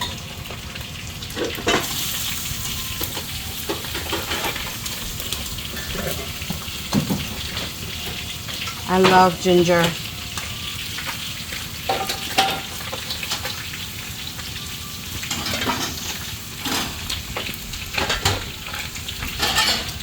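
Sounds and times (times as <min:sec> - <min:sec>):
food sizzling in a pan: 0:00.0 - 0:20.0.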